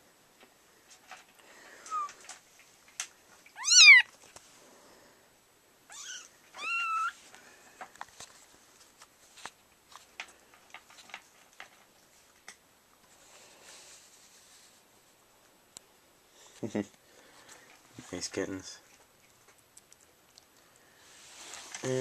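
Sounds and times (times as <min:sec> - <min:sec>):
kitten meowing: 0:01.8 - 0:02.2, 0:03.5 - 0:04.1, 0:05.9 - 0:07.2.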